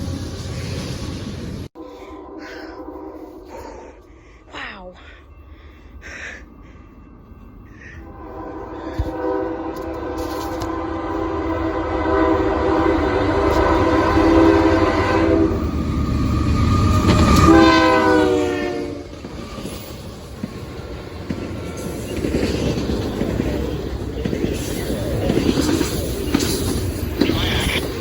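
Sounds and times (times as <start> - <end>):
train rumble and clickety-clack: 0.0 - 28.0
locomotive horn chord: 1.8 - 3.9, 8.0 - 15.7, 17.1 - 19.1.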